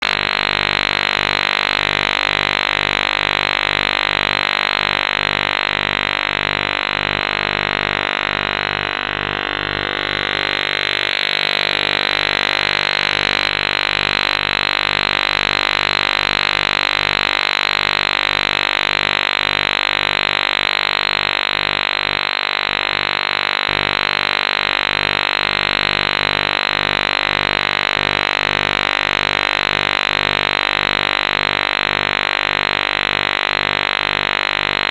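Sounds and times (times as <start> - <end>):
harsh electronic humming tone: 0.0 - 34.9.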